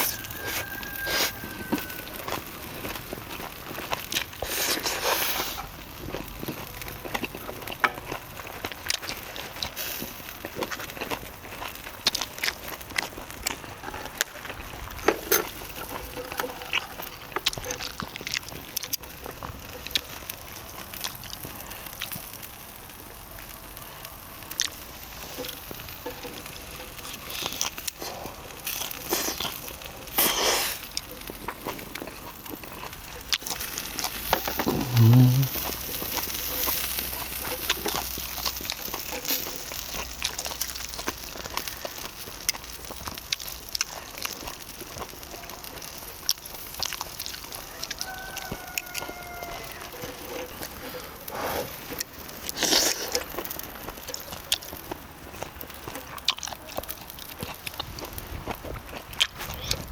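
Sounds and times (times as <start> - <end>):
crackles and pops from coals: 0.0 - 59.9
meat sizzling on grill: 0.0 - 59.9
short low voice-like sound: 34.7 - 35.6.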